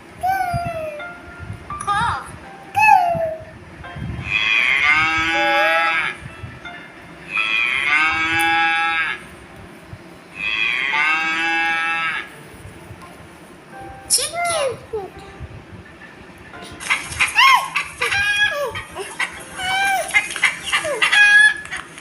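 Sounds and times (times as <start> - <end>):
cow mooing: 4.2 - 6.2, 7.3 - 9.2, 10.4 - 12.3.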